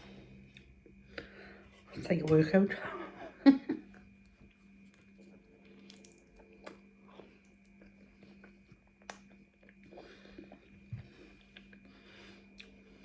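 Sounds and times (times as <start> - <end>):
low electrical hum: 0.0 - 13.0
chewing food close-up: 4.5 - 13.0
mouth clicks and smacks: 5.8 - 6.8.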